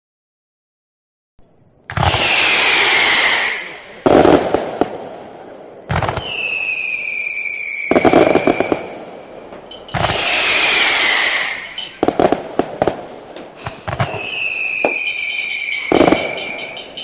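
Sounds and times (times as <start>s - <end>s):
firework crackles: 1.9s - 5.2s, 5.9s - 17.0s
firework bangs: 5.9s - 17.0s
firework whistle falling in pitch: 6.2s - 8.8s, 14.0s - 17.0s.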